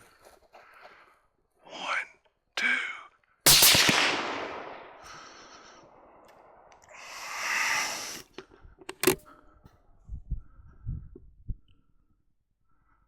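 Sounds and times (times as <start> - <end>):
echo of rifle shots: 3.5 - 6.8
breathy hiss: 4.2 - 8.4
sharp click: 7.7 - 9.2.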